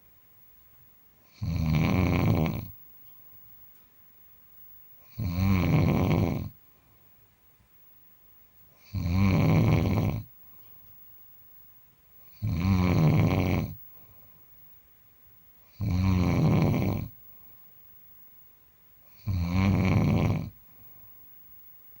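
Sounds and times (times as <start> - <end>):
person snoring loudly: 1.3 - 2.7, 5.1 - 6.5, 8.8 - 10.2, 12.4 - 13.8, 15.7 - 17.1, 19.1 - 20.5.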